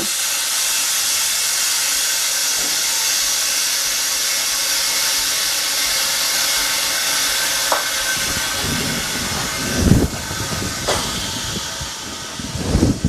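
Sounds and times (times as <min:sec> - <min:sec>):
compressed air hissing: 0:00.0 - 0:13.0.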